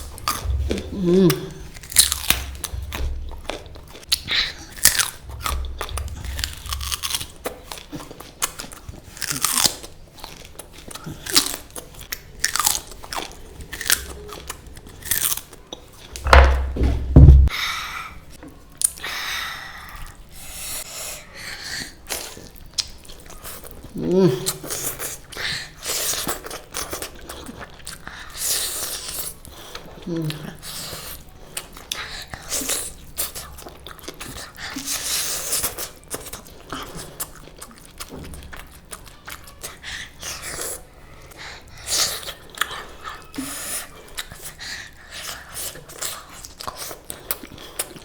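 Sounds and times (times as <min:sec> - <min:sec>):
low thump: 0:00.0 - 0:03.9, 0:05.0 - 0:07.3, 0:16.2 - 0:17.5
person chewing and crunching food: 0:00.0 - 0:17.5, 0:19.8 - 0:48.0.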